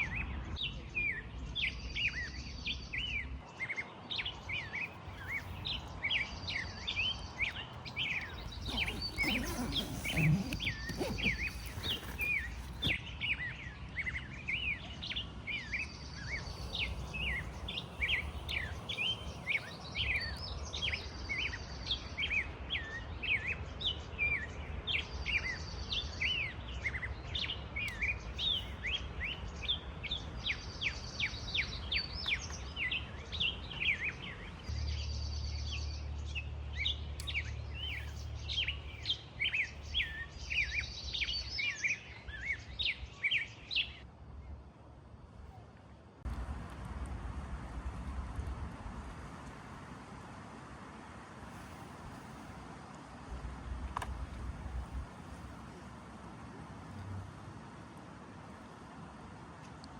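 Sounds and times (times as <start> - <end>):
small birds chirping: 0.6 - 44.0.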